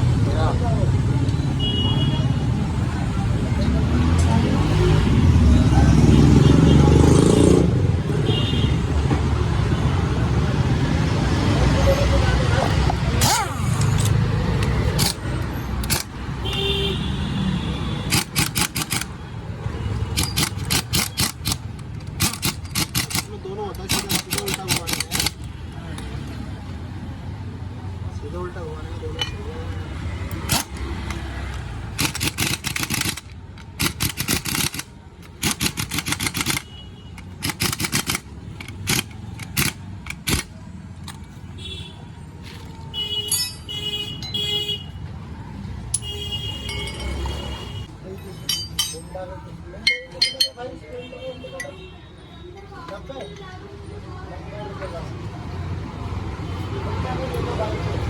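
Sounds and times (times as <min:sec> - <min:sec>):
street traffic rumbling: 0:00.0 - 0:58.0
vehicle horn beep: 0:01.4 - 0:02.4
rapid clicking: 0:18.1 - 0:19.2, 0:20.1 - 0:25.5, 0:32.0 - 0:40.5.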